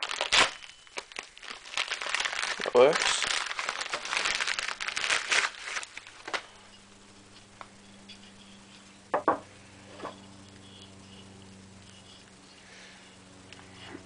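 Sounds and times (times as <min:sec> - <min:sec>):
plastic wrapping crinkling: 0:00.0 - 0:09.0.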